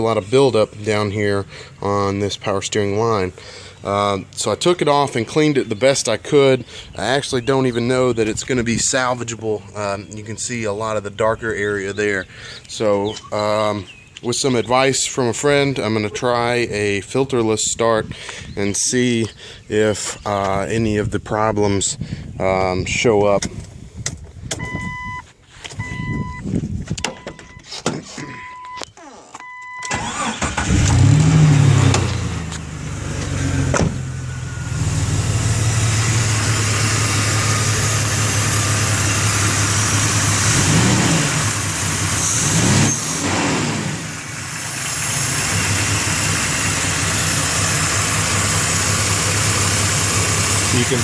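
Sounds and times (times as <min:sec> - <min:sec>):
warning chime beeping: 0:27.2 - 0:28.8
car engine starting and idling: 0:29.4 - 0:51.0.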